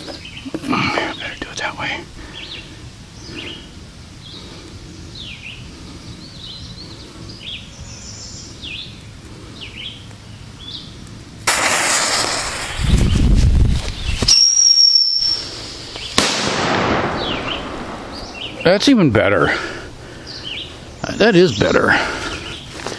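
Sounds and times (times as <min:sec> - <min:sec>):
birds chirping: 0:00.0 - 0:11.4, 0:12.6 - 0:22.9
sharp crack: 0:11.0 - 0:19.0
firecracker blast: 0:11.4 - 0:18.7.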